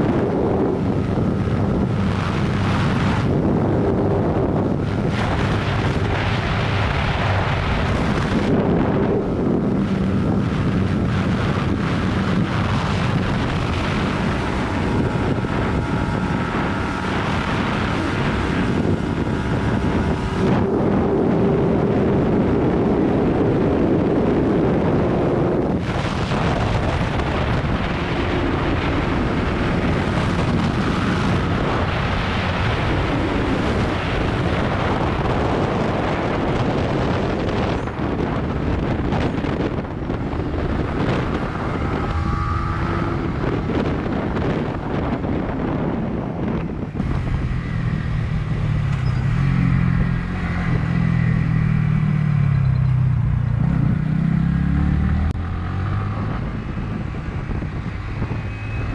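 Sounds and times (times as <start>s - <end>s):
motorcycle engine running: 0.0s - 58.9s
wind noise on microphone: 0.0s - 58.9s.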